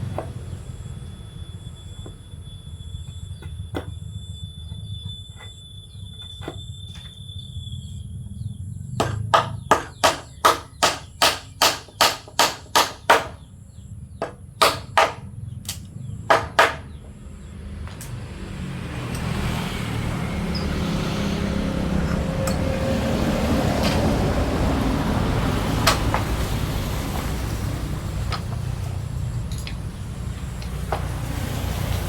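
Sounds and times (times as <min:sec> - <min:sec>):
hammer striking wood: 0:09.0 - 0:13.4, 0:14.2 - 0:15.3, 0:16.3 - 0:17.0.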